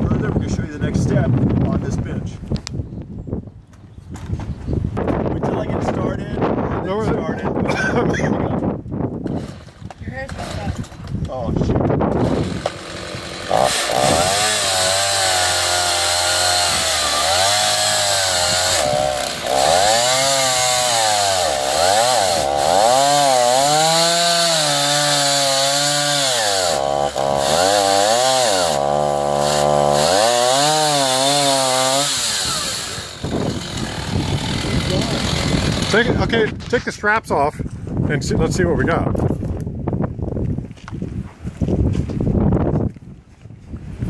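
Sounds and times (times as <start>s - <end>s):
chainsaw cutting log: 9.2s - 11.0s, 12.1s - 36.3s.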